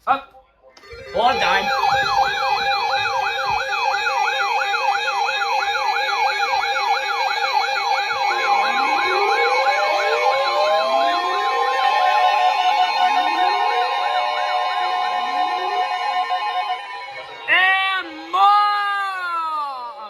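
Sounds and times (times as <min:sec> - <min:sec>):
electronic siren warbling: 0:00.8 - 0:20.0
rising siren wails: 0:00.8 - 0:20.0.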